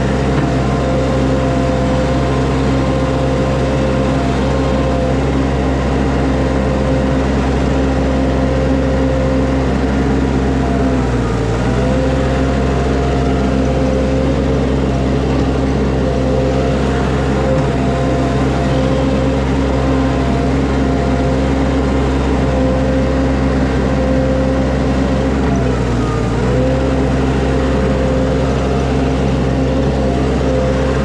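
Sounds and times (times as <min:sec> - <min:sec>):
skid steer engine running: 0:00.0 - 0:31.0.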